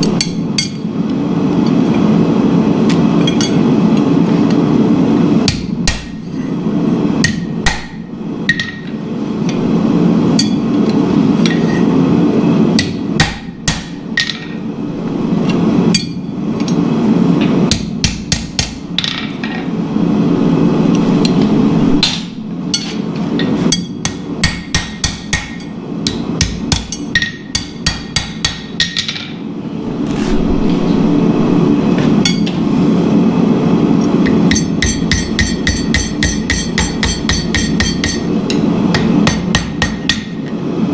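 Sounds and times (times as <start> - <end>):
hammer striking steel on anvil: 0.0 - 0.9, 7.2 - 9.0, 10.4 - 10.6, 12.8 - 14.6, 17.7 - 19.3, 23.7 - 29.3, 34.2 - 40.5
low rushing noise: 29.4 - 34.1.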